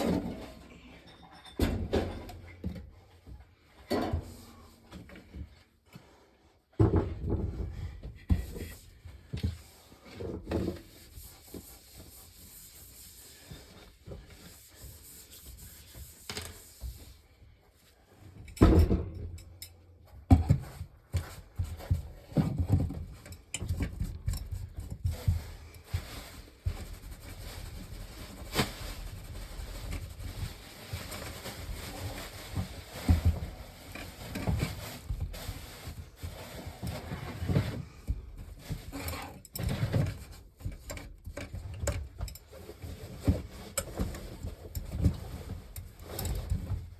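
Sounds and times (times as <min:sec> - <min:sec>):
objects knocking and thumping: 0:00.0 - 0:05.6, 0:06.7 - 0:11.0, 0:18.4 - 0:35.6.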